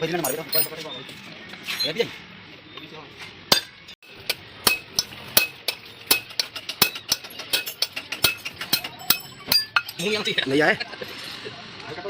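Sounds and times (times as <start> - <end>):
metal tools clinking: 0.0 - 1.1, 3.6 - 10.2.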